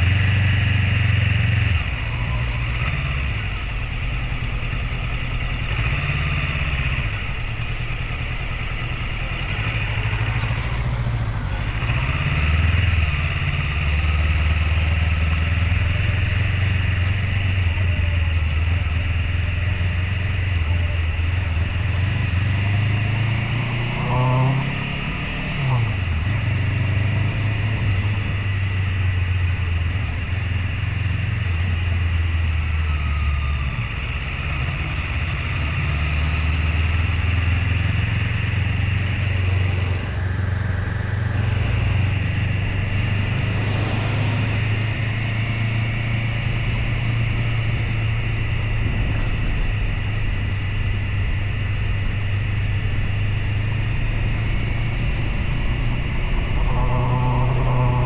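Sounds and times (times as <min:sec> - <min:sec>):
motorcycle engine running: 0:00.0 - 0:58.0
constant rushing noise: 0:37.0 - 0:58.0.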